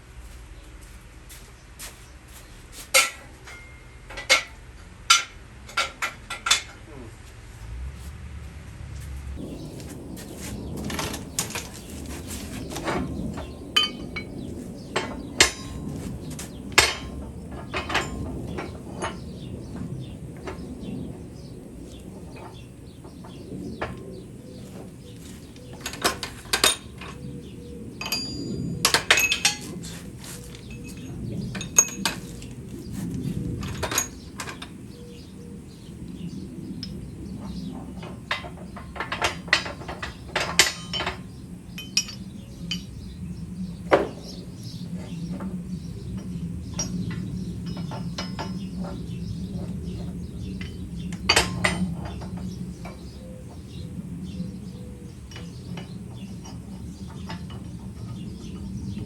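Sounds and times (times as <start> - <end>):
metal tools clinking: 2.9 - 6.8, 10.8 - 19.8, 24.6 - 27.4, 28.0 - 34.7, 38.3 - 43.1
steady low hum: 6.9 - 59.0.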